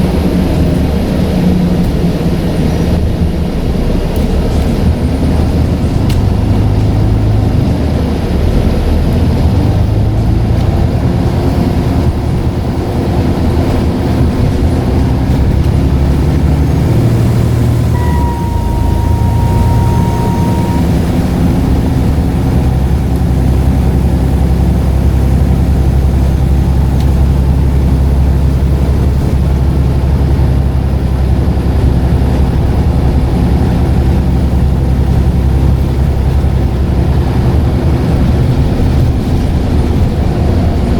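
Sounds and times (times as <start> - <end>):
bus diesel engine running: 0.0 - 40.9
turbocharger whistle: 17.0 - 23.1.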